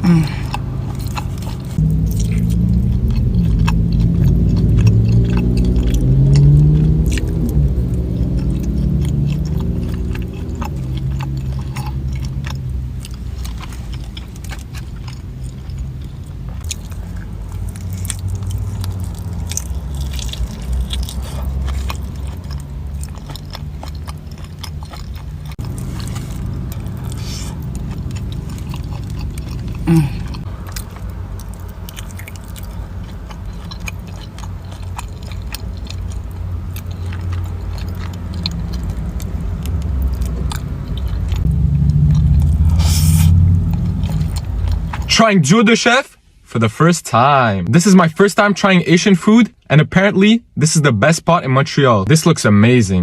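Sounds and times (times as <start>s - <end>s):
low steady drone: 0.0s - 23.2s, 25.4s - 33.8s, 34.8s - 45.1s
chewing and biting: 0.0s - 45.1s.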